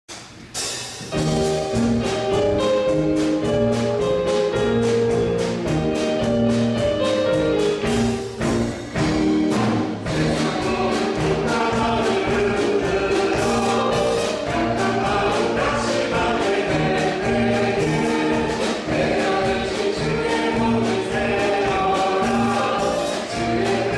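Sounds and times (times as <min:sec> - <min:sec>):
praise band playing: 0:00.6 - 0:23.9
voices singing: 0:10.0 - 0:23.9.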